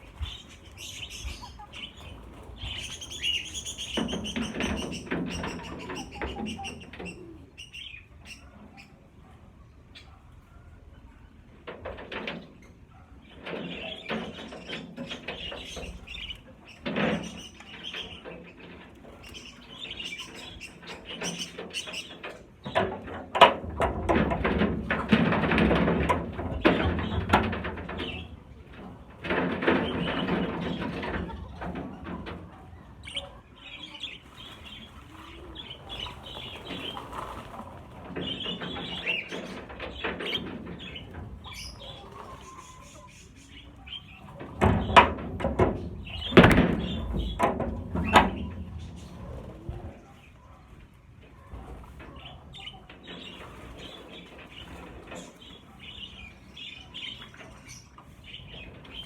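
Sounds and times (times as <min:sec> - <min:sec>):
budgerigars chattering and chirping: 0:00.2 - 0:09.0.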